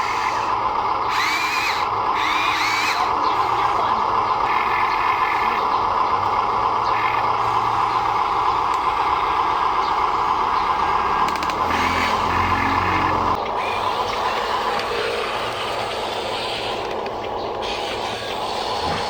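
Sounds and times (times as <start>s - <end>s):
small electric motors whirring: 0.0s - 5.9s, 6.9s - 19.0s.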